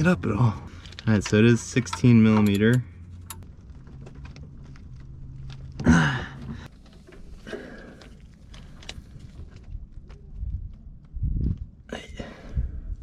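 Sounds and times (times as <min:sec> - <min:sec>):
socket wrench metallic clicks: 0:01.8 - 0:03.4
person grunting: 0:05.8 - 0:06.6.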